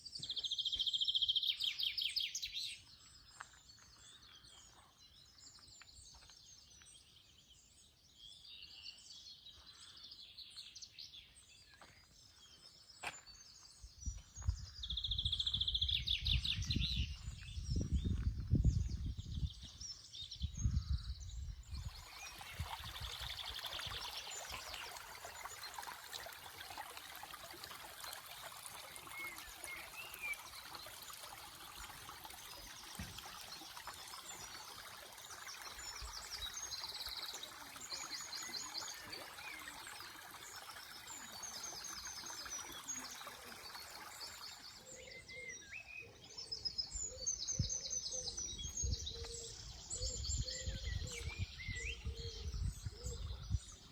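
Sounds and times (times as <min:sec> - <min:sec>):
stream water running: 0:00.0 - 0:10.2, 0:21.6 - 0:53.9
small birds singing trills: 0:00.0 - 0:53.9.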